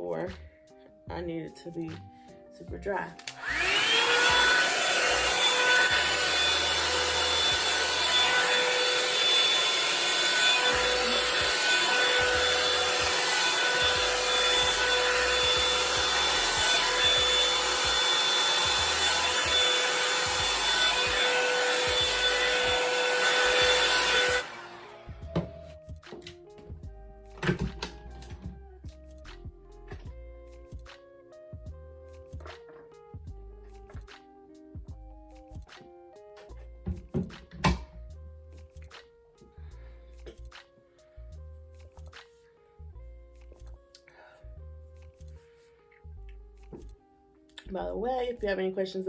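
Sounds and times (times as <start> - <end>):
hair dryer brush motor whine: 3.0 - 25.8.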